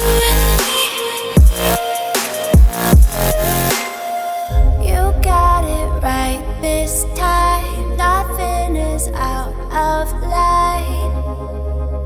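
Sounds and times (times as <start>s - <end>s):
electronic dance music: 0.0s - 4.5s.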